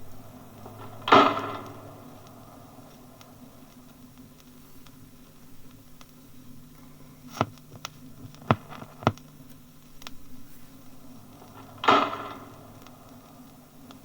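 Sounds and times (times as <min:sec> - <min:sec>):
low steady hum: 0:00.0 - 0:14.0
short crackle: 0:00.0 - 0:14.0
record surface clicks: 0:00.7 - 0:10.3.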